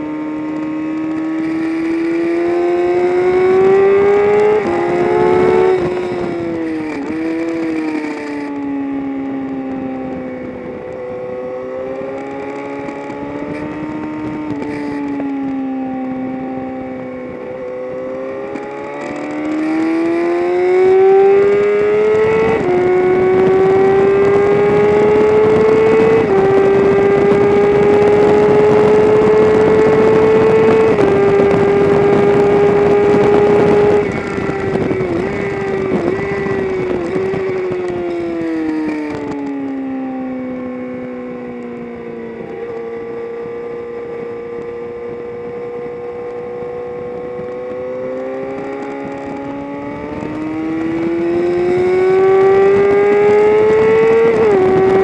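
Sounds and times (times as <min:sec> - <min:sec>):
car engine at full throttle: 0:00.0 - 0:55.0
engine throttle blips: 0:09.3 - 0:40.0.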